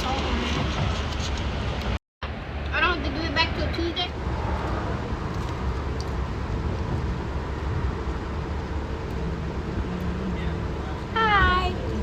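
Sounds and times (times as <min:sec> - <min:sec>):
car road noise from inside: 0:00.0 - 0:12.0.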